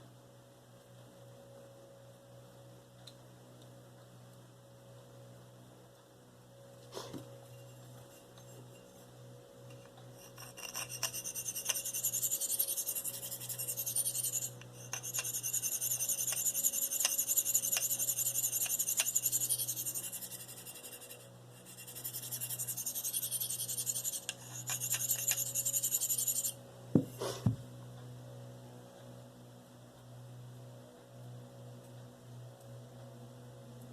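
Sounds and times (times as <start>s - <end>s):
knife scraping on sharpening stone: 7.5s - 9.0s, 9.7s - 27.3s.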